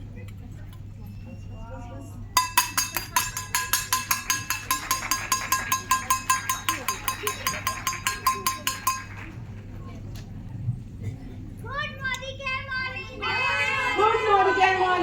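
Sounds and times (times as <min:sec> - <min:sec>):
school bell ringing in rapid strokes: 0:02.4 - 0:09.3.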